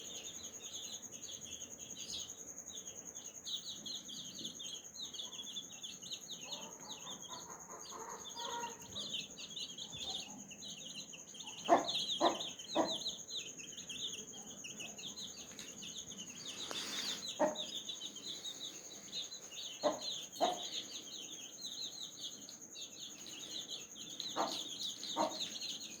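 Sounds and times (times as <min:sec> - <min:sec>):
baby chicks peeping: 0:00.0 - 0:26.0
hen clucking: 0:16.7 - 0:17.7.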